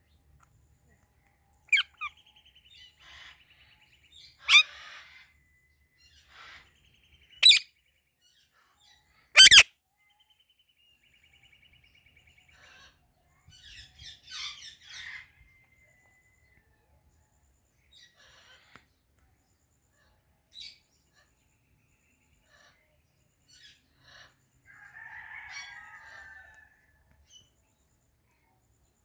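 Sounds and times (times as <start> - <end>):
parakeets chattering: 1.7 - 2.1, 4.5 - 4.7, 7.4 - 7.6, 9.4 - 9.6
parakeets chirping trills: 1.7 - 2.1, 4.4 - 4.9, 7.4 - 7.6, 9.4 - 9.6
parakeets screeching: 1.7 - 2.1, 4.5 - 4.8, 7.4 - 7.6, 9.4 - 9.6.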